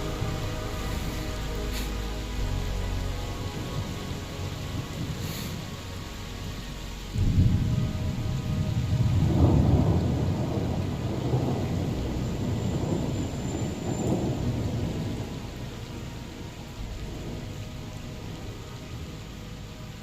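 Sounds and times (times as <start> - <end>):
falling rain: 0.0 - 20.0
rolling thunder: 7.1 - 19.2.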